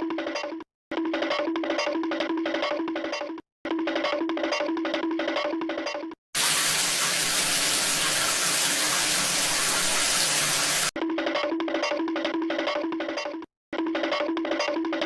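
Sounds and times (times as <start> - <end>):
running water rushing: 6.4 - 10.9.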